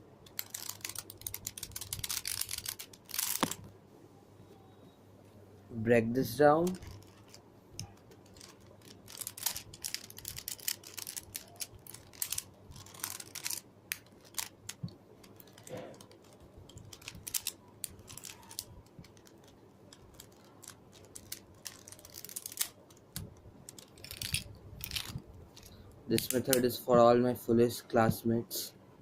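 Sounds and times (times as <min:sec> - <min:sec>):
plastic puzzle cube clicking: 0:00.3 - 0:03.6, 0:06.7 - 0:25.2.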